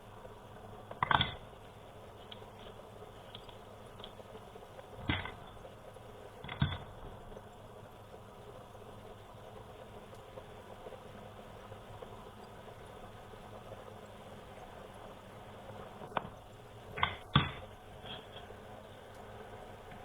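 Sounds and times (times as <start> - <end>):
faint small ticks: 2.1 - 5.6, 9.6 - 11.3.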